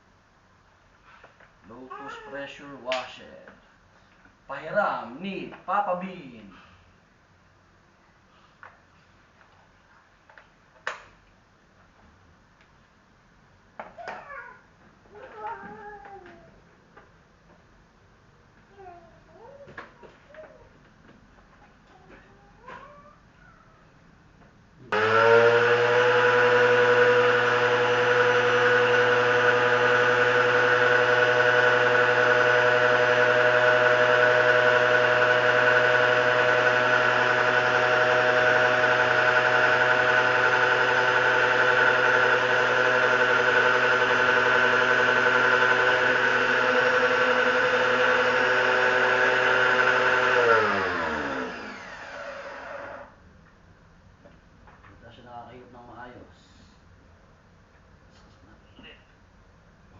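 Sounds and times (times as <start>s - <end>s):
pressure washer motor humming: 24.9s - 53.1s.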